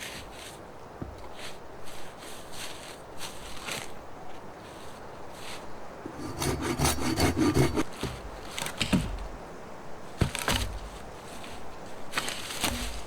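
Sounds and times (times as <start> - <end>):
rasping on wood: 6.0 - 8.5.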